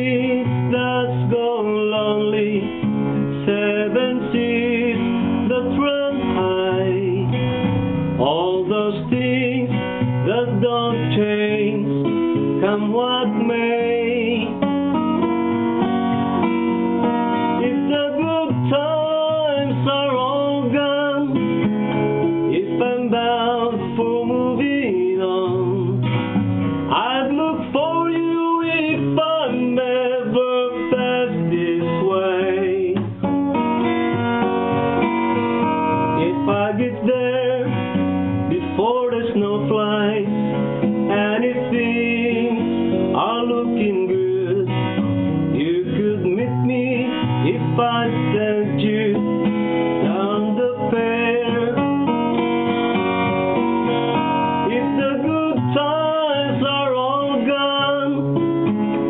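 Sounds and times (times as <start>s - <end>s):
person singing: 0.0s - 7.4s, 8.2s - 12.0s, 12.6s - 14.6s, 17.5s - 21.5s, 22.5s - 26.1s, 26.9s - 33.2s, 35.9s - 40.4s, 41.1s - 44.8s, 45.6s - 49.4s, 50.0s - 52.1s, 54.5s - 58.4s
acoustic guitar strumming: 0.0s - 59.0s.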